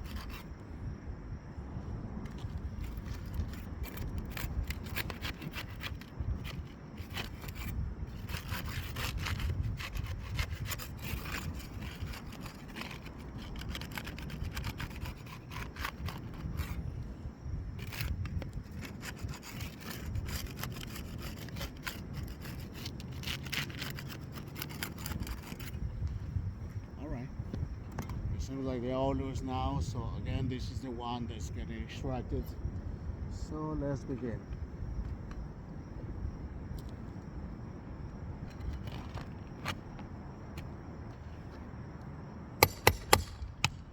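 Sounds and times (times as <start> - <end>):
prying tool scraping roof shingles: 2.3 - 16.9, 17.8 - 25.8, 38.5 - 40.7, 42.6 - 43.9.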